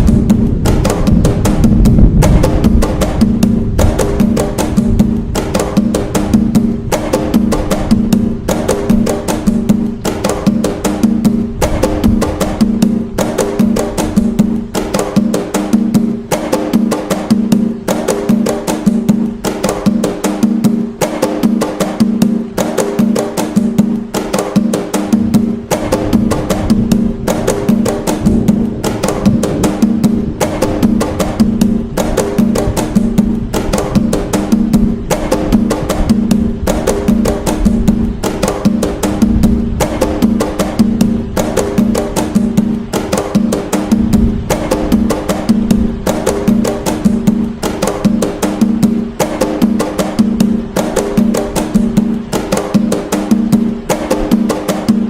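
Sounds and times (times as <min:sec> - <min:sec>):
deep low drum strokes: 0:00.0 - 0:16.5, 0:25.0 - 0:50.8
hand drums playing fast rhythm: 0:00.0 - 0:55.0.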